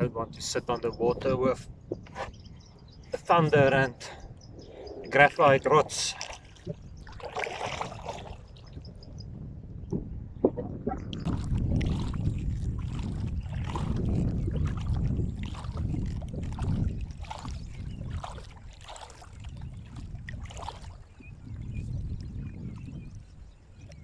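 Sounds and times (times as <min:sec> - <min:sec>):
wind rumble on microphone: 0:00.0 - 0:24.0
kayak paddle splashing: 0:05.8 - 0:08.9, 0:11.2 - 0:21.3.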